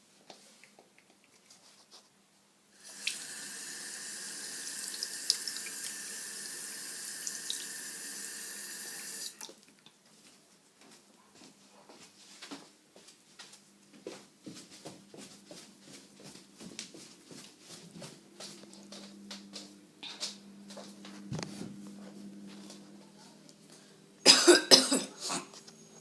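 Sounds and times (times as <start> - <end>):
tap water running into sink: 2.8 - 9.5.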